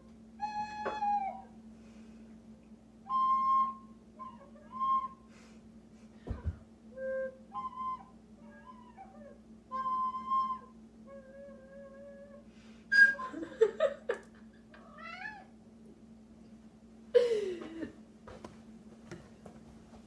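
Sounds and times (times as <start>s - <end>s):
cat meowing: 14.8s - 15.5s.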